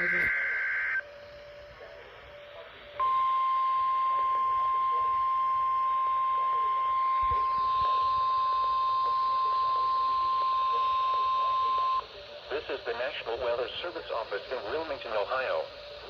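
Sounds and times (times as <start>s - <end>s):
steady high alarm tone: 0.0s - 12.2s.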